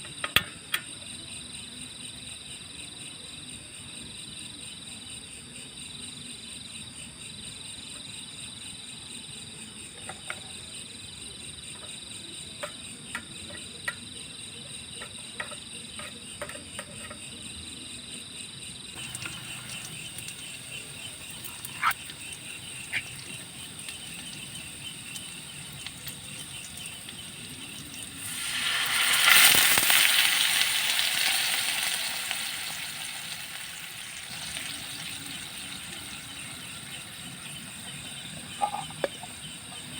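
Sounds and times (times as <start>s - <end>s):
frogs calling: 19.0s - 39.9s
insects calling: 19.0s - 39.9s.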